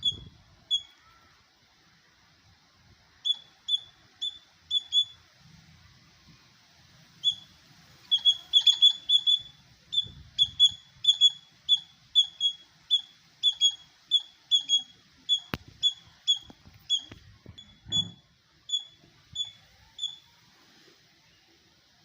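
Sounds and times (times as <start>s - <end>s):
squirrel chirping: 0.0s - 1.0s, 3.2s - 5.2s, 7.2s - 20.3s.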